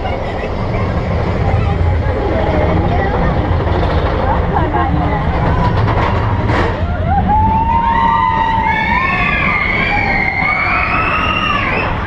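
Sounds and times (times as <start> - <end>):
roller coaster rumbling on track: 0.0 - 12.0
riders screaming: 6.8 - 12.0.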